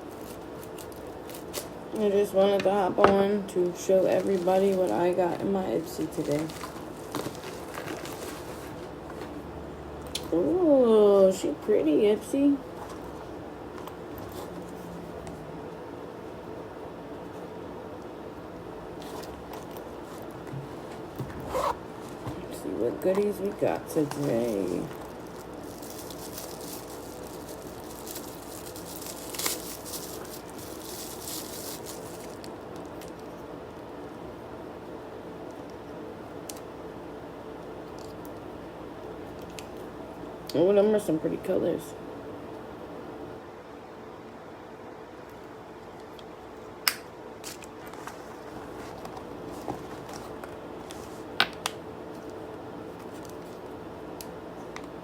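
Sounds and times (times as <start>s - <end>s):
packaging rustling and crinkling: 0.0s - 1.9s, 3.8s - 9.4s, 19.0s - 33.4s, 47.4s - 51.3s
faint steady hum: 0.0s - 55.0s.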